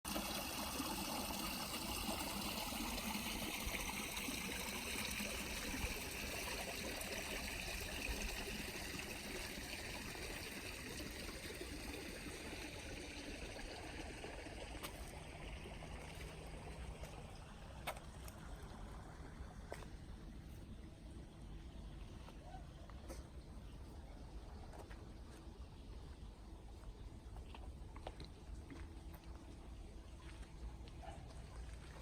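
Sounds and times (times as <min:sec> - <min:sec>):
stream trickling over cascades: 0:00.1 - 0:19.8.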